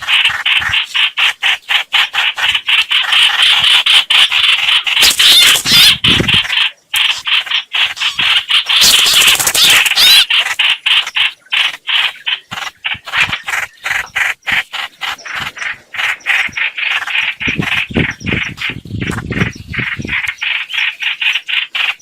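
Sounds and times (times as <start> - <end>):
recorded bird call notes: 0.0 - 22.0.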